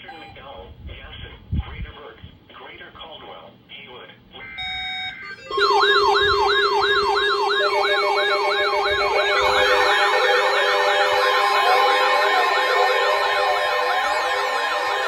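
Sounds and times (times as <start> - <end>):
falling siren-like wail: 5.4 - 15.0
steady low tone: 5.4 - 15.0.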